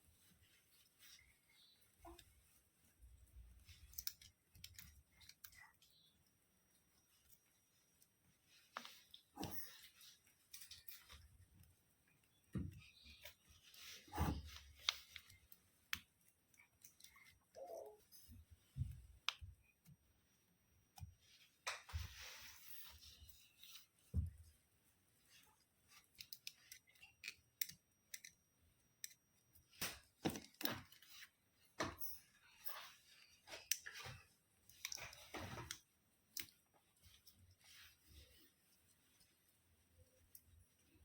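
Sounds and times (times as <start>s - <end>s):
faint clicks and taps: 3.6s - 6.4s, 7.1s - 20.1s, 25.3s - 37.9s.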